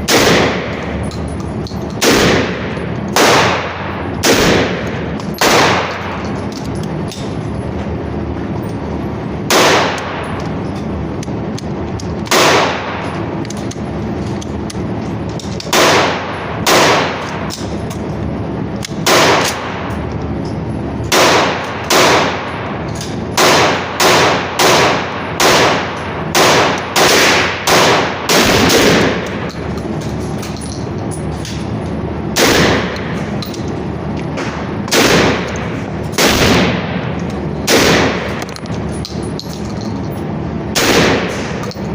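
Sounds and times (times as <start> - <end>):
rifle shots echoing: 0.0 - 1.1, 2.0 - 6.4, 9.5 - 10.4, 12.3 - 13.3, 15.7 - 17.8, 18.9 - 19.9, 21.1 - 29.5, 32.3 - 33.4, 34.4 - 38.5, 40.7 - 41.7.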